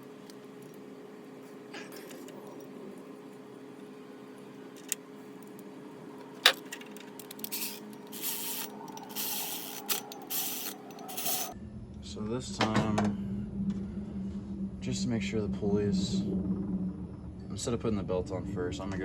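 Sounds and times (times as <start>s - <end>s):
steady low hum: 0.0s - 19.0s
metal parts scraping: 6.4s - 11.6s.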